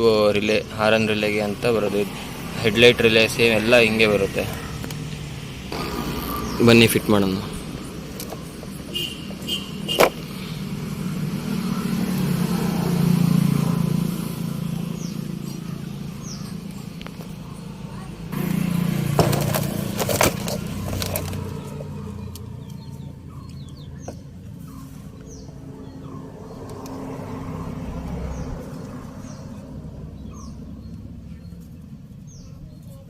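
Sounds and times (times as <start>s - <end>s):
small birds chirping: 0.0s - 33.0s
hands rustling wiring: 19.2s - 21.9s.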